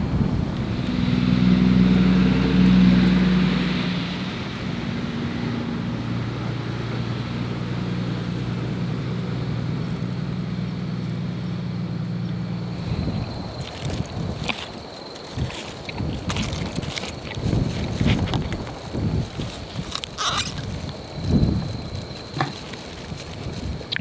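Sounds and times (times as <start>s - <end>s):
wind noise: 0.0s - 6.4s, 12.6s - 24.0s
engine running steadily: 0.0s - 24.0s.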